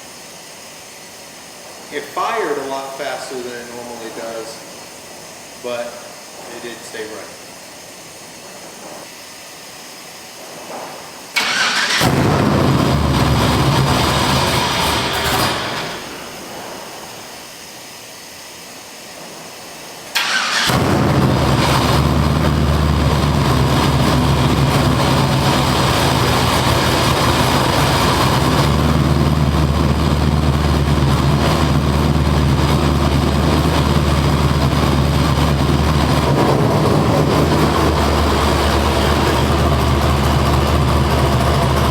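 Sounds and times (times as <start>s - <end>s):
engine starting and idling: 11.3s - 17.5s, 20.0s - 41.9s.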